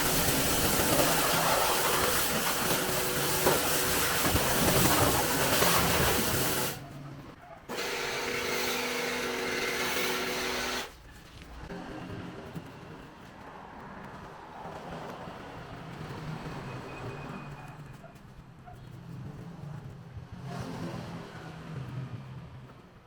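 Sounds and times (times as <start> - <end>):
compressed air hissing: 0.0 - 6.8.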